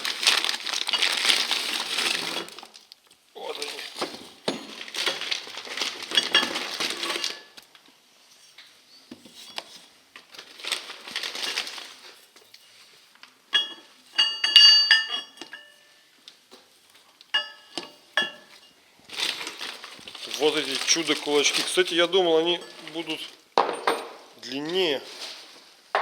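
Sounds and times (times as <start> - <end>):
packaging rustling: 0.0 - 2.9, 3.6 - 7.6, 10.2 - 12.4, 19.1 - 23.4.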